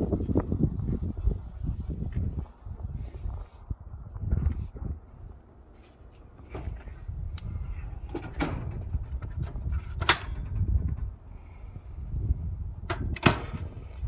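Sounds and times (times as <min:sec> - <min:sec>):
metal knocks and bangs: 0:08.0 - 0:11.1.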